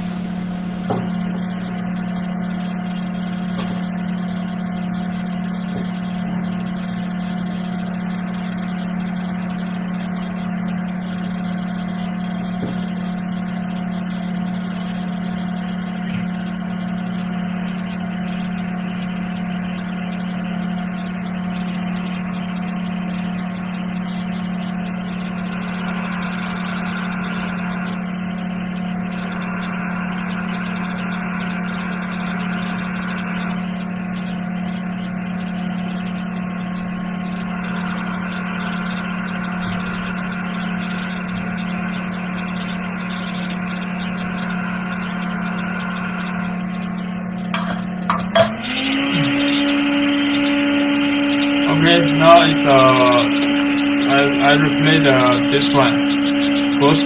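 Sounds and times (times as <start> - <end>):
fan humming with air hiss: 44.4 - 57.0
higher tone: 47.6 - 57.0.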